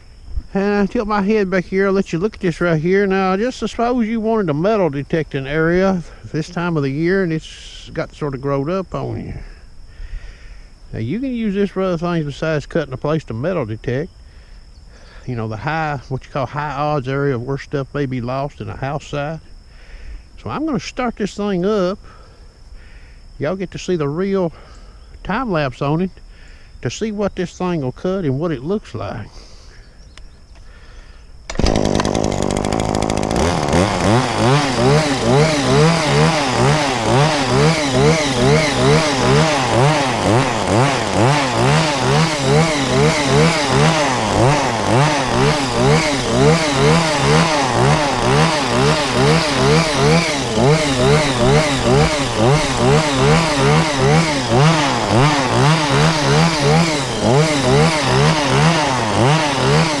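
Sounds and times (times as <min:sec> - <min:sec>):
hedge trimmer engine running: 0:02.5 - 0:07.9, 0:31.5 - 1:00.0.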